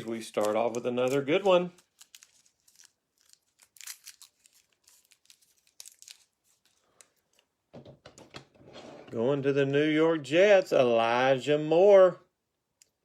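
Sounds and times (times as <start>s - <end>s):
trading cards rustling: 0.0s - 7.5s.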